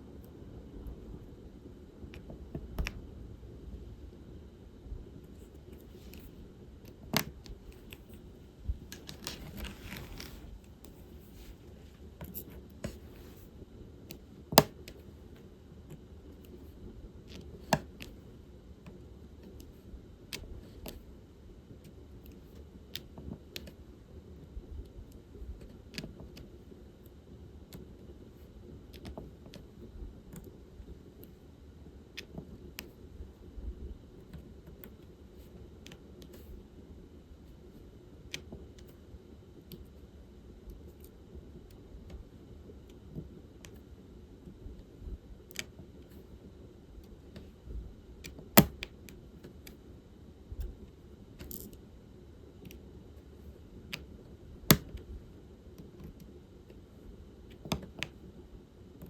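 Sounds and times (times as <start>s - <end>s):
scratchy rustle: 9.0s - 10.5s
drill pen clicks and taps: 14.6s - 14.8s, 48.3s - 48.9s, 54.7s - 55.0s, 57.5s - 58.2s.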